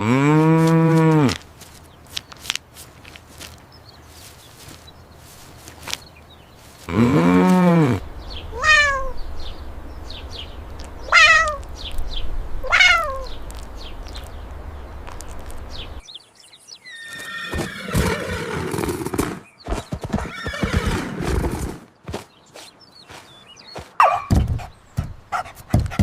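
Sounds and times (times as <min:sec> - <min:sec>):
horse whinnying: 0:08.6 - 0:09.1, 0:16.9 - 0:19.3, 0:20.2 - 0:21.8.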